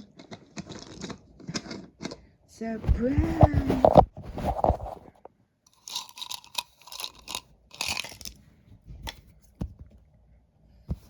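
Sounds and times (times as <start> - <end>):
wrapper crinkling and crunching: 5.7 - 8.4.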